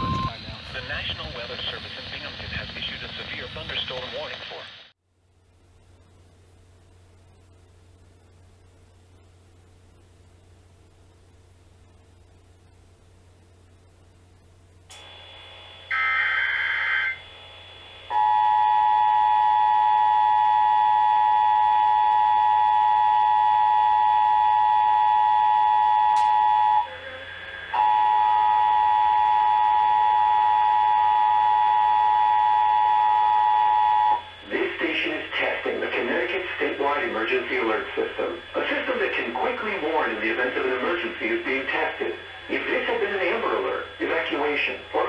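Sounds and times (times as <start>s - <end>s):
two-tone attention signal: 0.0s - 0.3s, 15.9s - 17.2s, 18.1s - 27.0s, 27.7s - 34.3s
warbling digital data burst: 15.9s - 17.2s
man speaking: 34.4s - 45.0s.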